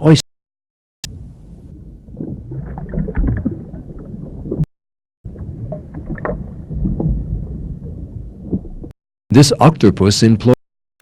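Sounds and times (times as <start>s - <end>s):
underwater clicks and gurgles: 1.0s - 4.7s, 5.3s - 8.9s
underwater rumbling wash: 1.0s - 4.7s, 5.3s - 8.9s.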